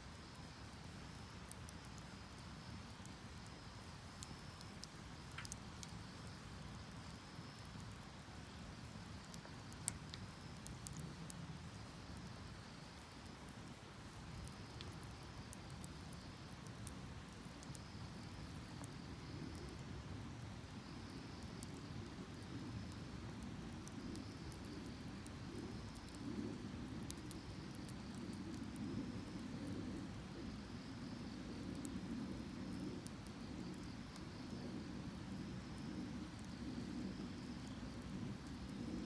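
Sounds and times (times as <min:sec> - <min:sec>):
insects chirping: 0:00.0 - 0:39.0
wood fire crackling and popping: 0:00.1 - 0:39.0.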